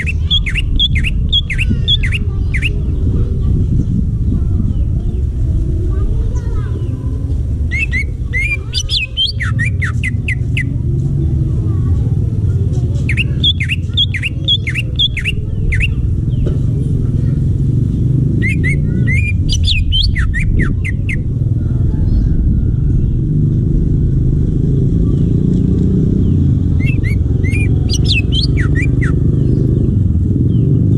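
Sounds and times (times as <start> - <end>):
bird singing quick sweeping chirps: 0.0 - 2.7, 7.7 - 10.8, 13.0 - 16.5, 18.4 - 21.2, 26.3 - 29.7
steady low rumble: 0.0 - 30.9.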